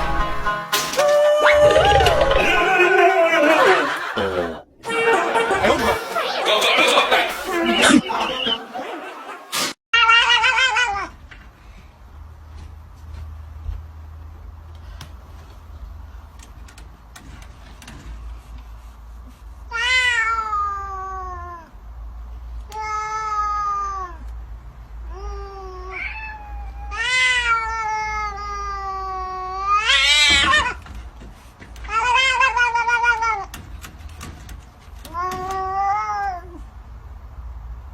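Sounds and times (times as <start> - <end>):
cat meowing: 19.7 - 21.7, 25.1 - 30.8, 35.1 - 36.6.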